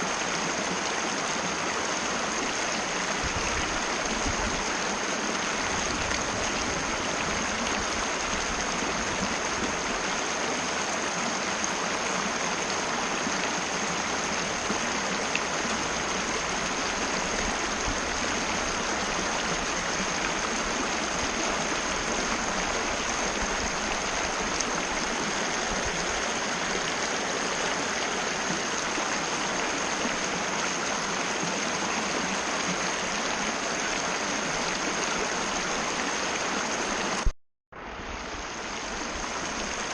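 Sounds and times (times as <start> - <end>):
river rushing over rocks: 0.0 - 39.9.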